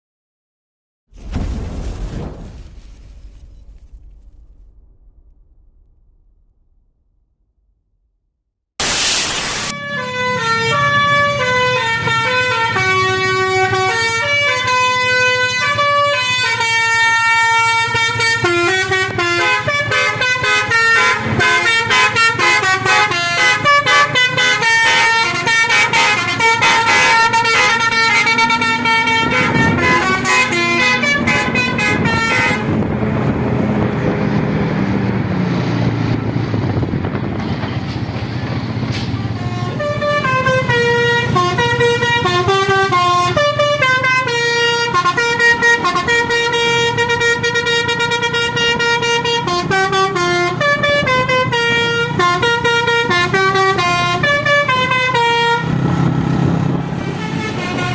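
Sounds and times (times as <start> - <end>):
road noise: 8.8 - 57.9
bus engine: 8.9 - 57.9
bus horn playing a tune: 9.7 - 33.3, 39.2 - 57.9.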